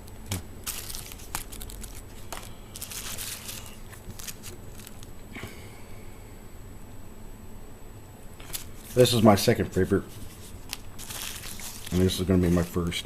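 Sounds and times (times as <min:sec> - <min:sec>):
paper crinkling: 0:00.0 - 0:05.2, 0:08.4 - 0:13.0.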